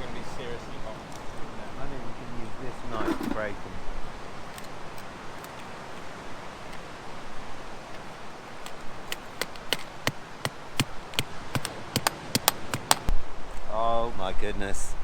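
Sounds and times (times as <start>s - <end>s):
lobster shell cracking: 4.5s - 13.1s.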